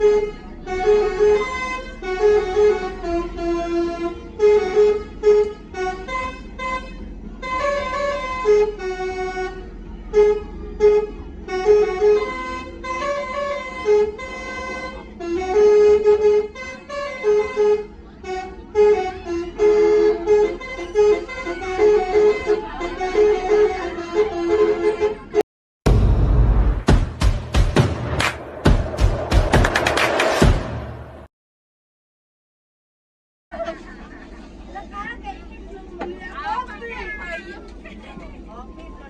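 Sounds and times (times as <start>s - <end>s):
bus horn playing a tune: 0.0s - 25.4s
low rumble of bus: 0.0s - 31.3s, 33.5s - 39.0s.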